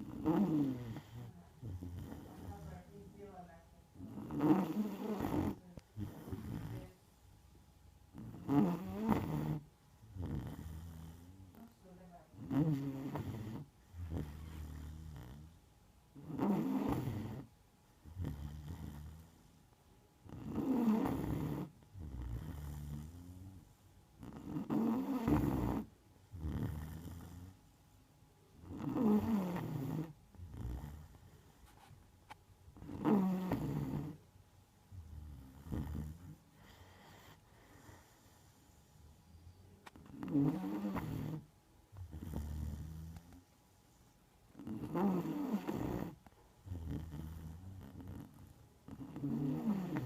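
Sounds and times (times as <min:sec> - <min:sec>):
dog snoring: 0:00.0 - 0:07.0, 0:08.1 - 0:19.6, 0:20.2 - 0:27.7, 0:28.5 - 0:31.9, 0:32.7 - 0:43.6, 0:44.5 - 0:50.0
soft dog breaths: 0:00.0 - 0:28.0, 0:29.1 - 0:50.0
dog breathing deeply: 0:35.8 - 0:39.0.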